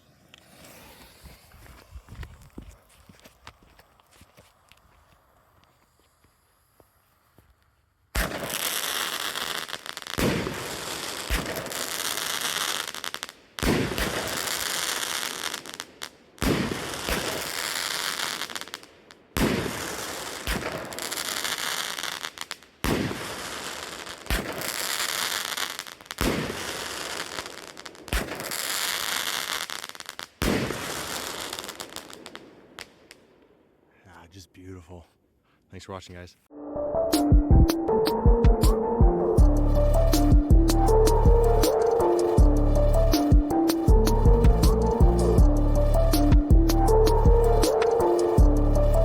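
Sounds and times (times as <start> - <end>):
firework crackling and hissing: 0.0 - 33.4.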